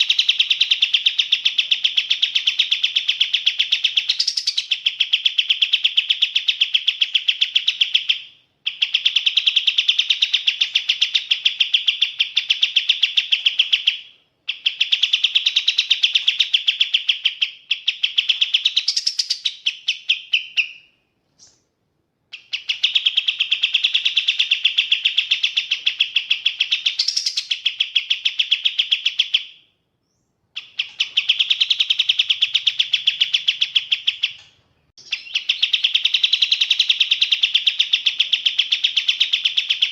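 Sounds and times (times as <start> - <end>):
bird chattering song: 0.0 - 21.7, 22.3 - 39.9
high upswept bird notes: 30.6 - 37.4.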